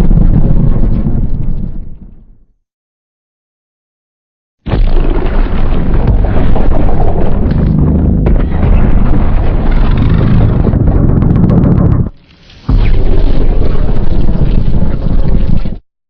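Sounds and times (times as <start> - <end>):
deep rumbling monster roar: 4.8 - 12.1.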